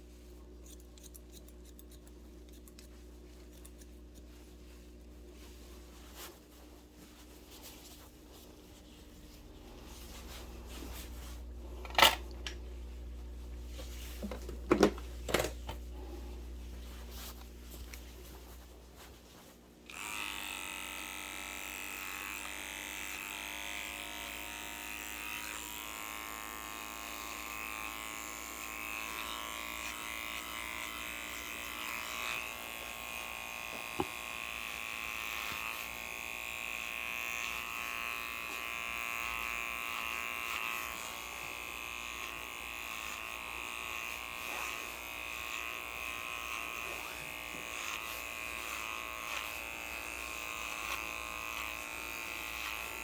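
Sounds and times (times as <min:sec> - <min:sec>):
electric hair clippers buzzing: 0:09.4 - 0:12.7, 0:19.8 - 0:53.0.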